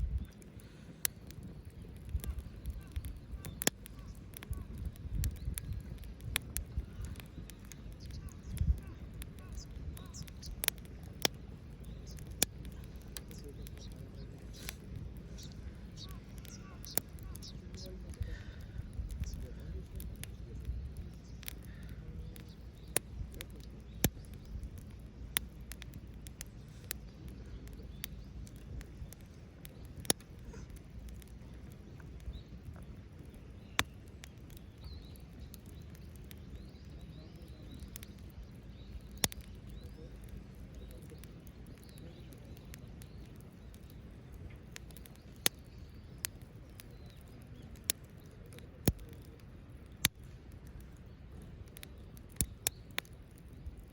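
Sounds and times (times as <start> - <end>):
low steady rumble: 0.0 - 0.9
wood fire crackling: 0.0 - 53.9.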